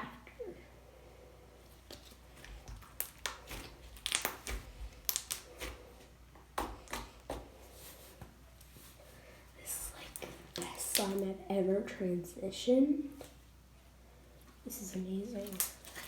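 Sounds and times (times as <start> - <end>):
slime squishing with sticky pops: 1.8 - 7.5, 10.0 - 11.3, 15.3 - 16.0.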